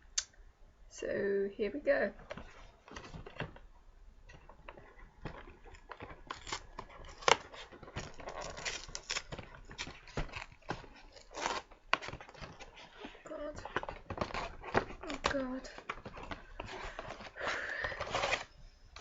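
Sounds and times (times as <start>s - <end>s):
packaging crinkling and tearing: 4.4s - 19.0s.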